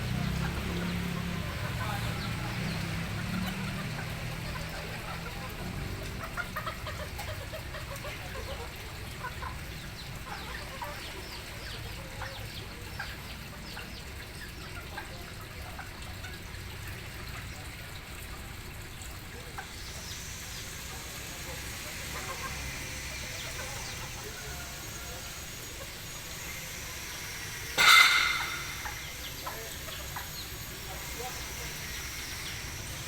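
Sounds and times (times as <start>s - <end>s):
chickens clucking and calling: 0.0s - 33.0s.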